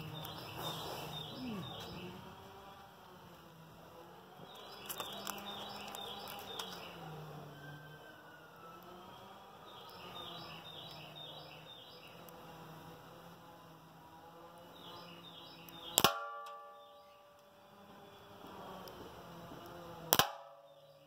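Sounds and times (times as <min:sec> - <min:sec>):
small birds chirping: 0:00.0 - 0:21.0
pellet revolver shot: 0:15.9 - 0:16.5, 0:20.1 - 0:20.6.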